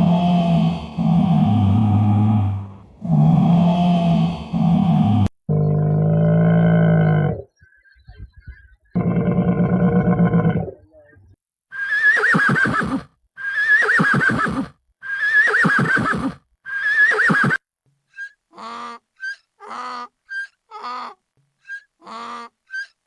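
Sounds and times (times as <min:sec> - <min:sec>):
low drawn-out animal call: 0:00.0 - 0:08.2, 0:08.9 - 0:17.6
horse whinnying: 0:11.8 - 0:17.6.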